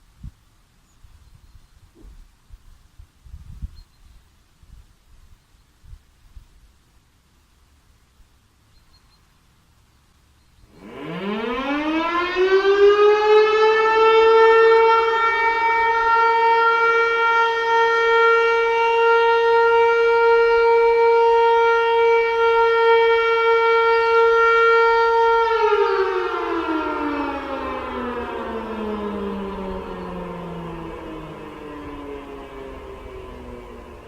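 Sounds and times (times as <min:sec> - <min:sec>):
civil defence siren: 0:10.7 - 0:34.0.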